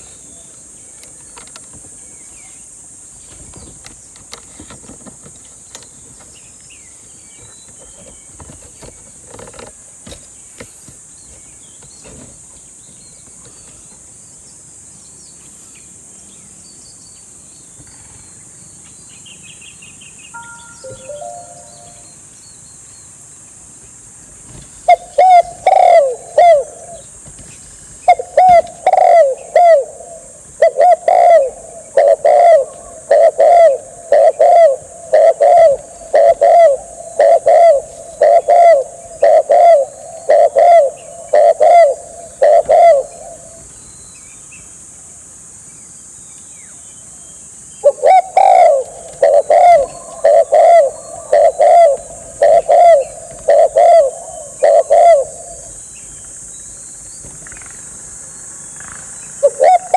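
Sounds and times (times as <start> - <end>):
dove cooing: 20.4 - 22.1, 24.5 - 43.8, 47.8 - 58.1, 58.7 - 59.9.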